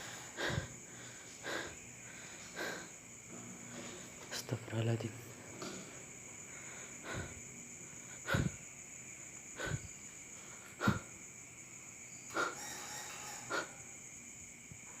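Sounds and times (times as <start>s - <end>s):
high insect chirring: 0.0s - 15.0s.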